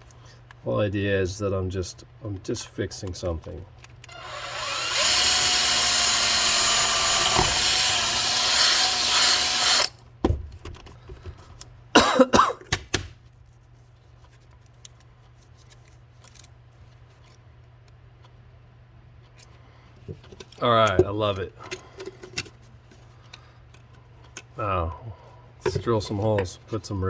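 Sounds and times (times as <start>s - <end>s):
power tool working metal: 4.1s - 10.0s.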